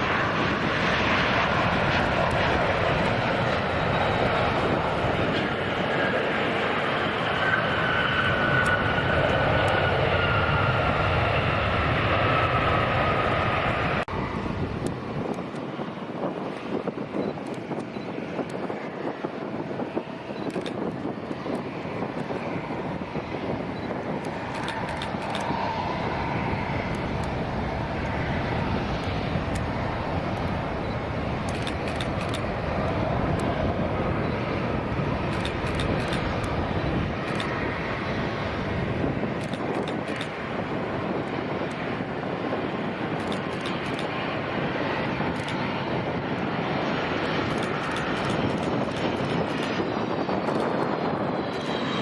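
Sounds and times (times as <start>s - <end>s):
airplane engine rumble: 0.0s - 52.0s
short clicks: 24.2s - 25.6s, 31.4s - 32.4s, 35.3s - 36.6s, 39.4s - 40.4s, 43.2s - 44.1s, 47.4s - 49.7s.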